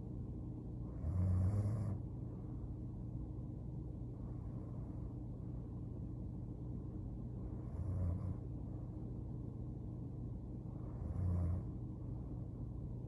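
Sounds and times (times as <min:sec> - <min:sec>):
steady low hum: 0:00.0 - 0:13.0
woman snoring: 0:01.0 - 0:02.0.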